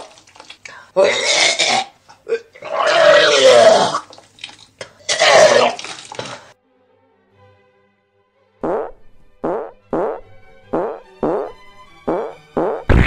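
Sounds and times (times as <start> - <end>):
person belching: 1.0 - 4.1, 5.0 - 5.8.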